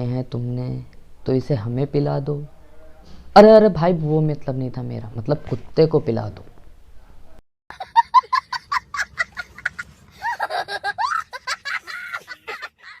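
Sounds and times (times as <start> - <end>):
high-pitched giggling laughter: 7.7 - 13.0.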